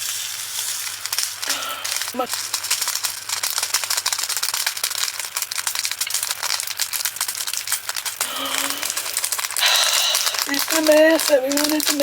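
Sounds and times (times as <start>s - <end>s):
tiny plastic beads pouring: 0.5s - 12.0s.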